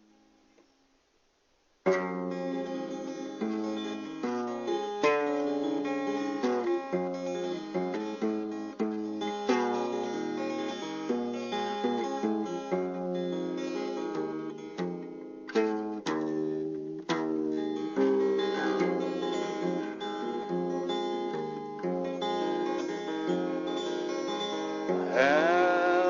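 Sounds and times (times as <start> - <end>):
acoustic guitar plucked and strummed: 1.8 - 26.0
sliding held melodic line: 22.7 - 26.0.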